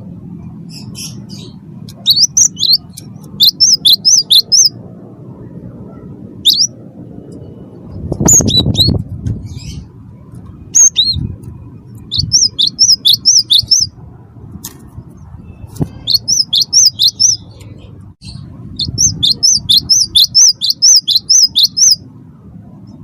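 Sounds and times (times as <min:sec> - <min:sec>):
low rumble: 0:00.0 - 0:13.0
bird chirping: 0:00.4 - 0:04.8, 0:05.9 - 0:06.8, 0:08.2 - 0:10.0, 0:10.7 - 0:11.3, 0:11.9 - 0:14.0, 0:15.2 - 0:22.1.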